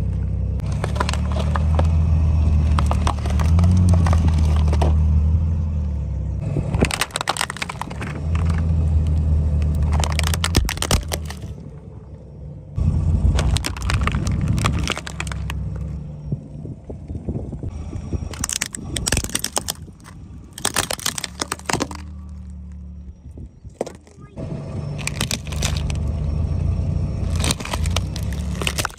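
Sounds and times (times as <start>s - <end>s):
tyres crushing brittle objects: 0.0s - 5.0s, 6.4s - 11.8s, 13.2s - 16.0s, 18.2s - 23.0s, 23.7s - 24.2s, 24.9s - 26.4s, 27.2s - 28.9s
car engine hum: 0.0s - 28.9s.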